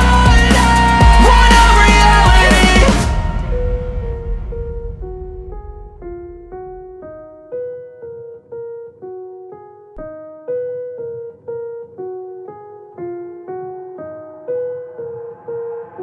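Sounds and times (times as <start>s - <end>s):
slow keyboard melody: 6.6s - 16.0s.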